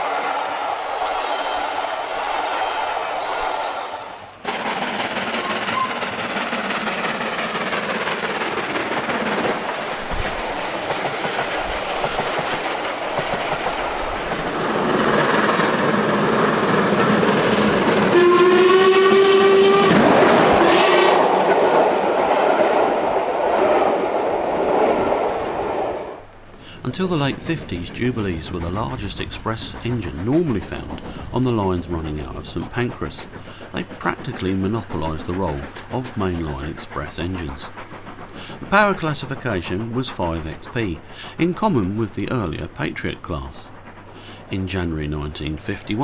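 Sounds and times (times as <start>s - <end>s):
steam locomotive running on rails: 0.0s - 46.0s
train whistle blast: 18.1s - 21.4s.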